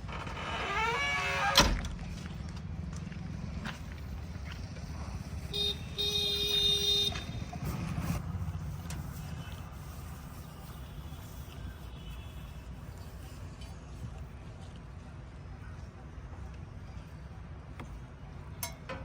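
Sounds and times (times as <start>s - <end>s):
diesel engines running: 1.8s - 15.4s
vehicle horn: 5.5s - 7.5s, 10.7s - 12.7s.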